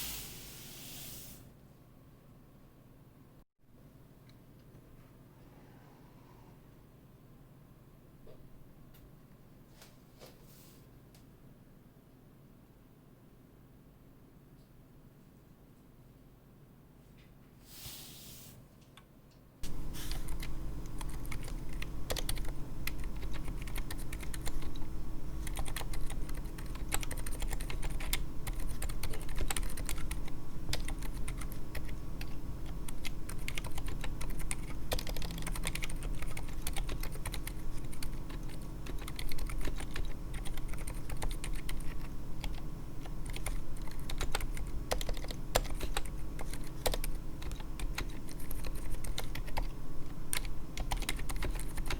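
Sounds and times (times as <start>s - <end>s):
fast mechanical keyboard typing: 19.7s - 51.9s.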